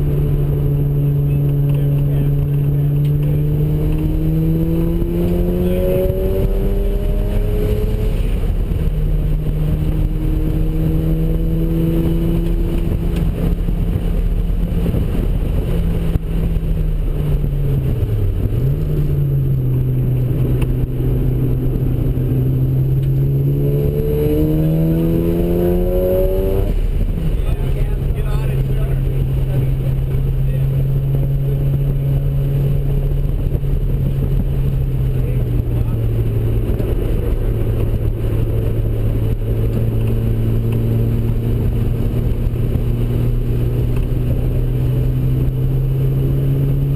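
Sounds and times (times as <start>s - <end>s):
rotary engine revving through gears: 22.8s - 26.7s.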